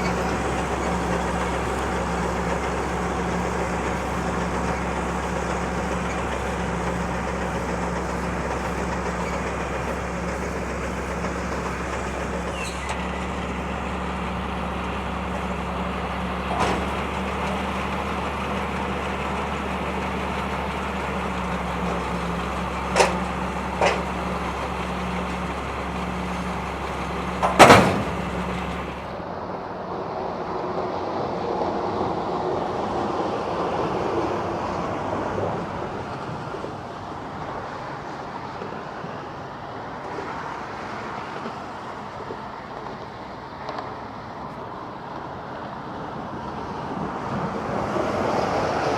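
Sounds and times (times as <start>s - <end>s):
tractor engine running: 0.0s - 29.4s.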